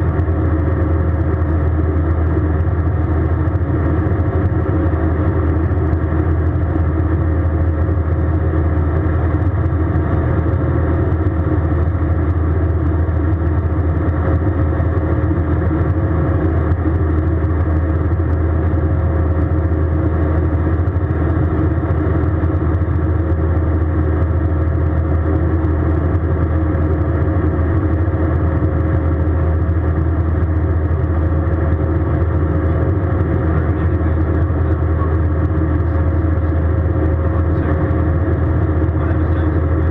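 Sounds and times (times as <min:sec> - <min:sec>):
airplane cabin engine drone: 0:00.0 - 0:39.9.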